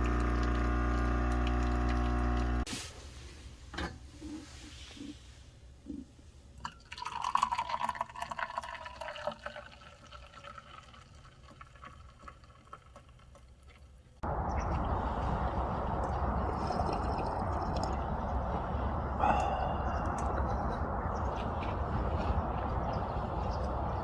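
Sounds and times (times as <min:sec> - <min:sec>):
liquid pouring into container: 0:00.0 - 0:02.6, 0:06.6 - 0:13.9.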